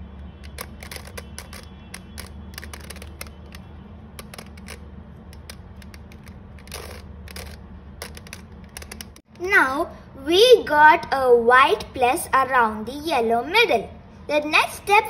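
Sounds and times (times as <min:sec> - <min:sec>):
puzzle cube clicking: 0:00.4 - 0:09.2.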